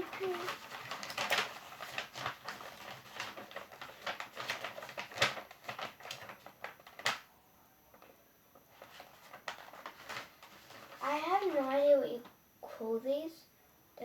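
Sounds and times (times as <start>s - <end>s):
plastic packaging crinkling: 0.0s - 7.3s, 8.6s - 11.7s.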